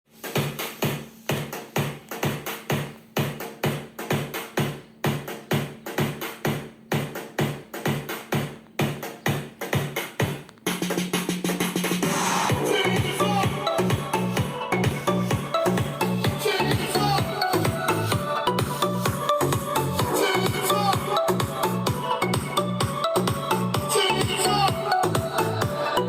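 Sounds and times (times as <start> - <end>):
electronic dance music: 0.1 - 26.0
held bass line: 3.2 - 26.0.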